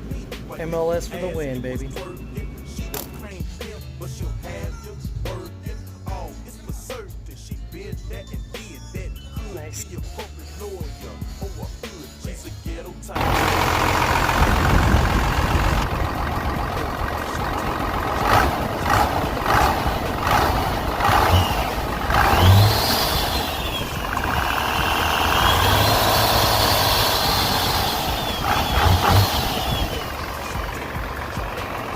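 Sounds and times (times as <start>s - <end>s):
diesel engine revving: 13.1s - 31.9s
high whine: 13.2s - 31.9s.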